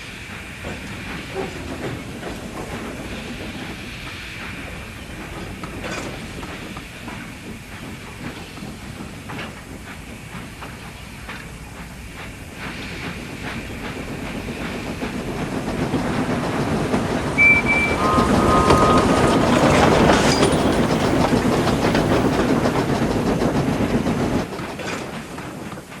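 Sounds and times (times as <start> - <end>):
train clickety-clack on rails: 0.0 - 26.0
short high-pitched tones: 17.4 - 20.8.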